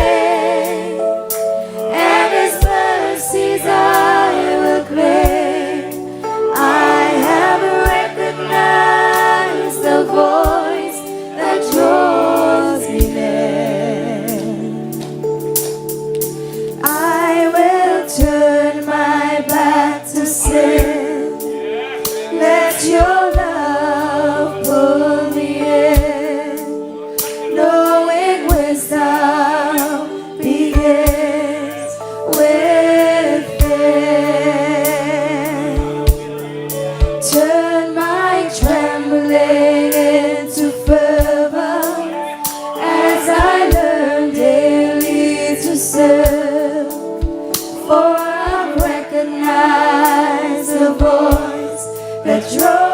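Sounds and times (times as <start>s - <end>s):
sustained instrumental chords: 0.0s - 52.9s
women singing in harmony: 0.0s - 52.9s.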